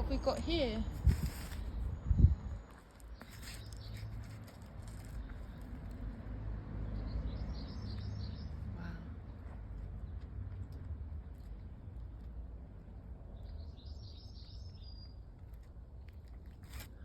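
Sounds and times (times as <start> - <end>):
steady low rumble: 0.0 - 2.7
birds chirping: 6.9 - 10.2, 13.3 - 15.3.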